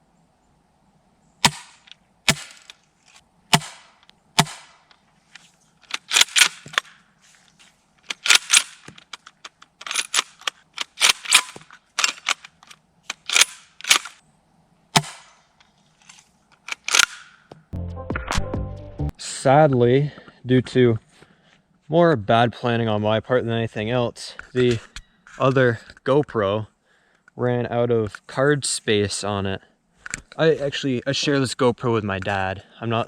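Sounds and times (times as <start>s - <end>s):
airsoft rifle cracks and clacks: 1.4s - 2.8s, 5.8s - 7.0s, 8.0s - 14.2s, 15.0s - 17.6s.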